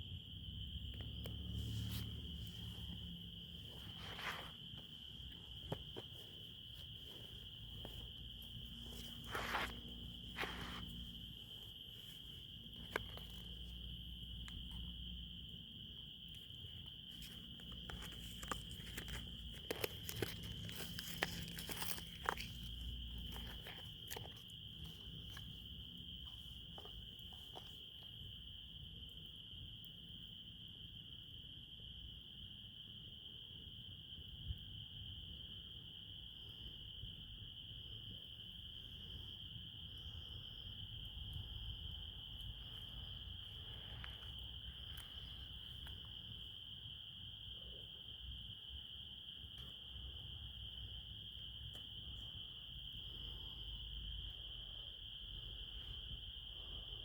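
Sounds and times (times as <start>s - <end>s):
crickets chirring: 0.0s - 57.0s.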